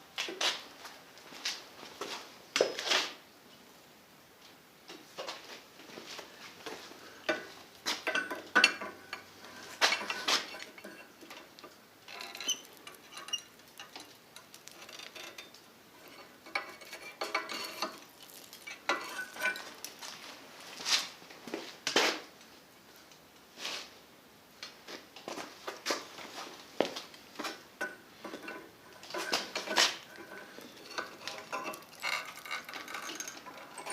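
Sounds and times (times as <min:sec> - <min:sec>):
metal objects clinking: 0:08.0 - 0:20.0, 0:27.8 - 0:33.9.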